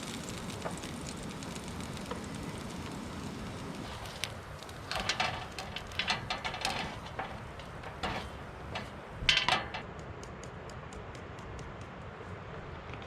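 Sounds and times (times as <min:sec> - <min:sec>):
objects being handled clattering: 0:03.8 - 0:09.9.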